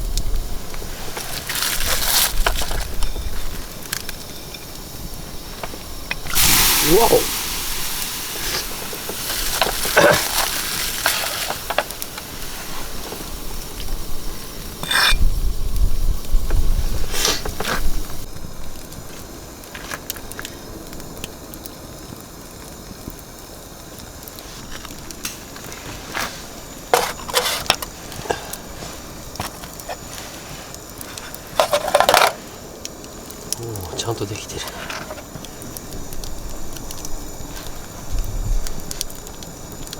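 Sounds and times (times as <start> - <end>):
wind rumbling on microphone: 0.0 - 9.9, 11.9 - 19.3, 35.2 - 39.8
firewood crackling: 0.0 - 39.9.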